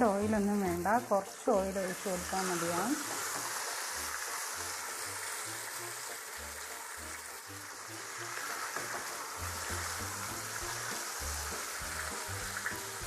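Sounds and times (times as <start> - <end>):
chicken frying in oil: 0.0 - 13.0
quiet background music: 0.0 - 13.0.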